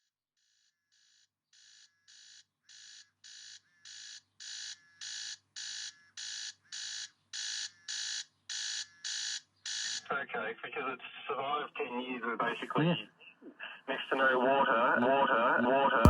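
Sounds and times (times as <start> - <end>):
alarm clock beeping: 0.5 - 10.0.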